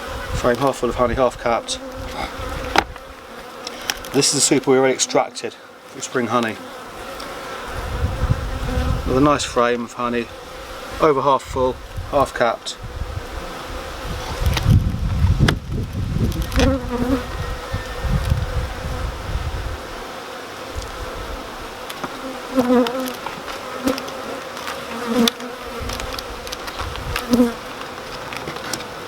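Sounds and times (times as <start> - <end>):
honeybees buzzing: 0.0 - 29.0.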